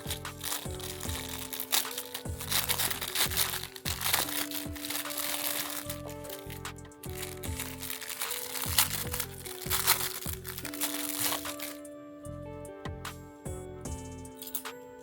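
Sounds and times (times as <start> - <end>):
plastic packaging crinkling: 0.0 - 11.8
background music with bass line: 0.0 - 14.6.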